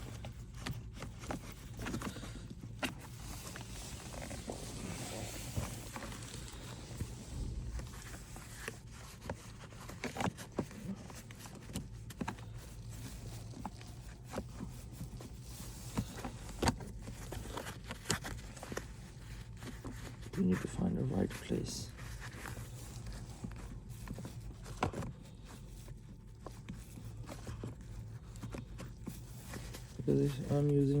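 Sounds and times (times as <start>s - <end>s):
steady low hum: 0.0s - 31.0s.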